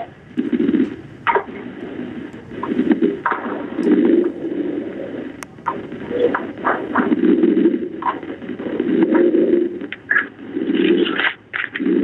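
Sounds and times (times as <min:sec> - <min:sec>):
distorted phone line noise: 0:00.0 - 0:12.0.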